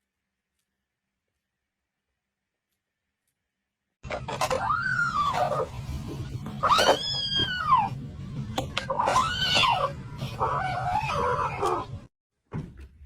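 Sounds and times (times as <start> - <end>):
cat meowing: 6.6 - 7.9.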